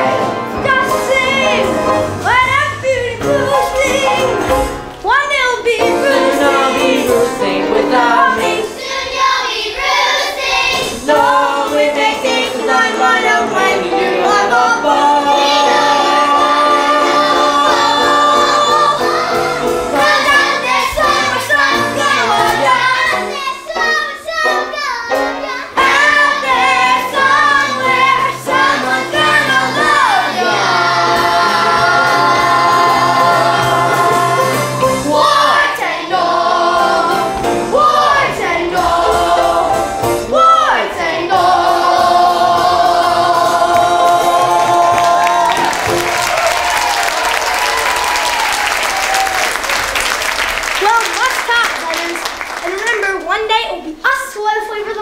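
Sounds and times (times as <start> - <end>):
children singing: 0.0 - 4.8, 5.5 - 49.9
instrumental accompaniment: 0.0 - 48.0.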